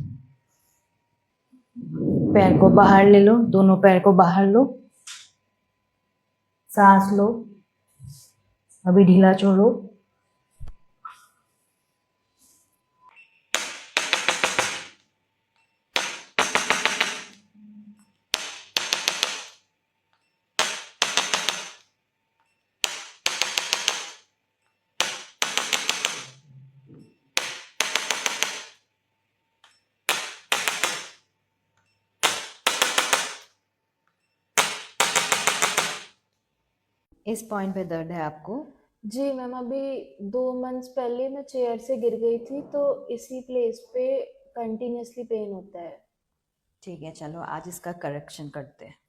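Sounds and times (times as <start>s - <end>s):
sharp mechanical clicking: 20.6s - 21.8s, 22.8s - 24.2s, 30.1s - 31.2s.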